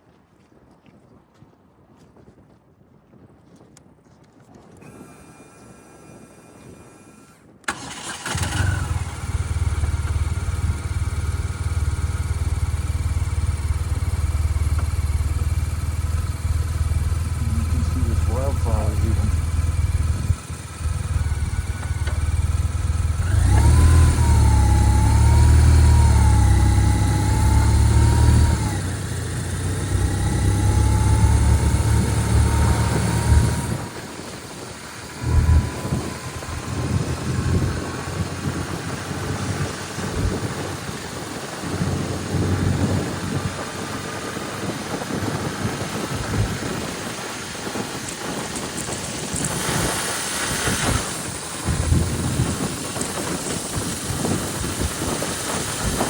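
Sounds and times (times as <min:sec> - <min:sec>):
wind buffeting microphone: 0:00.0 - 0:56.0
motorcycle engine running: 0:07.7 - 0:56.0
wavering whine: 0:30.4 - 0:37.6.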